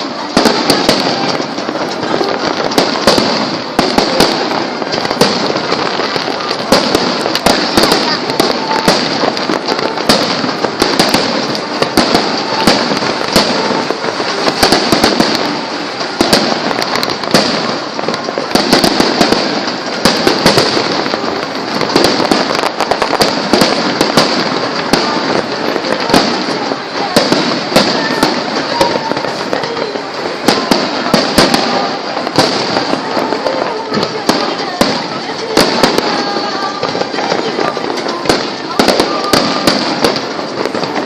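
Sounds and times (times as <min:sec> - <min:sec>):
dense crackling hiss: 0:00.0 - 0:41.0
firework bangs: 0:00.0 - 0:41.0.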